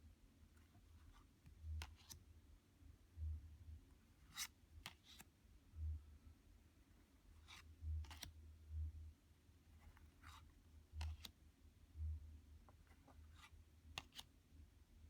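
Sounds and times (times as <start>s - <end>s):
cards swishing and clicking: 1.8s - 2.2s, 4.3s - 5.3s, 7.4s - 8.3s, 11.0s - 11.4s, 13.0s - 14.3s.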